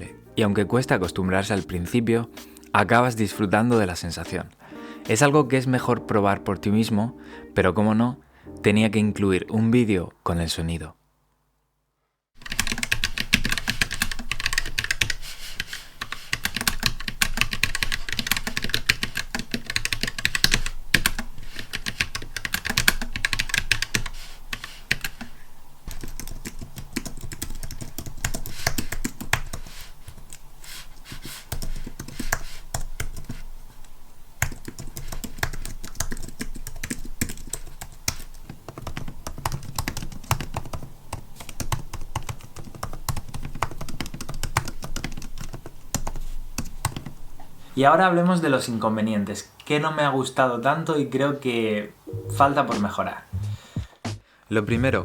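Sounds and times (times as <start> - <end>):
fast typing on mechanical keyboard: 12.4 - 30.4, 31.1 - 33.4, 34.4 - 47.2.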